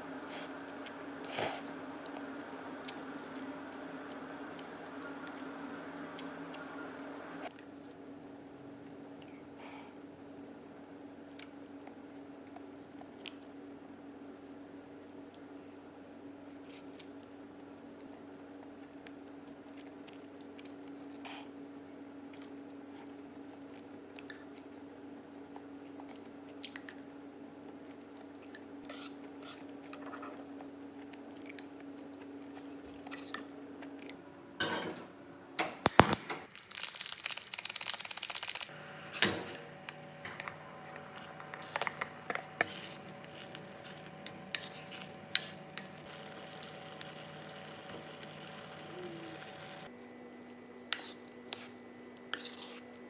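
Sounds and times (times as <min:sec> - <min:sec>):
appliance hum: 0:00.0 - 0:07.5, 0:32.2 - 0:53.0
cutlery and dishes clinking: 0:34.6 - 0:35.1, 0:39.1 - 0:44.0.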